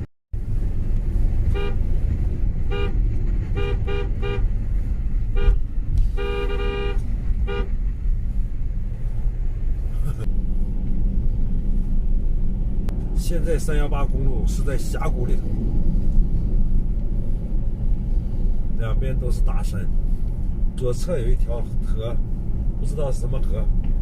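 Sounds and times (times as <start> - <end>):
vehicle rumble on road: 0.0 - 24.0
car horn tooting: 1.5 - 2.0, 2.6 - 4.5, 5.3 - 7.8.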